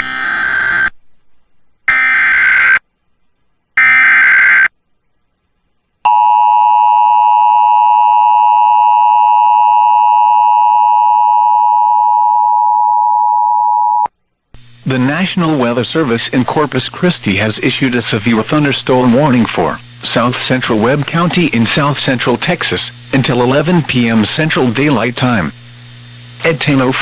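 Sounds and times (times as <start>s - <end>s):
two-tone attention signal: 6.1s - 14.1s
digital data bursts: 14.8s - 25.6s.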